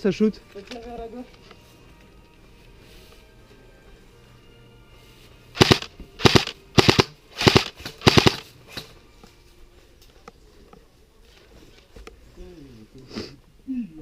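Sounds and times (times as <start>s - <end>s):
airsoft gun firing bursts: 5.6s - 8.5s.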